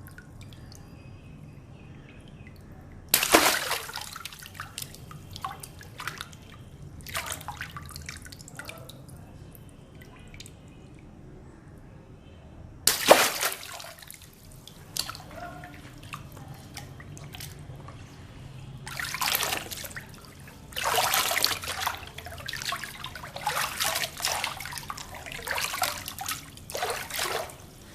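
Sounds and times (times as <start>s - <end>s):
water drips and clicks: 0.0s - 1.0s, 2.1s - 11.1s, 12.9s - 18.1s, 18.8s - 27.9s
water balloons bursting: 3.1s - 4.5s, 12.9s - 16.0s, 18.9s - 27.9s
water splashing and gushing: 3.1s - 8.7s, 12.9s - 17.6s, 18.9s - 27.9s.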